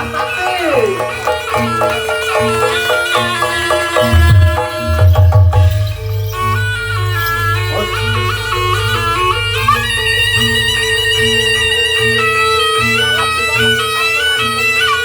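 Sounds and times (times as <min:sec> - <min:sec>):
reedy wind instrument melody: 0:00.0 - 0:15.0
steady drone: 0:01.0 - 0:14.6.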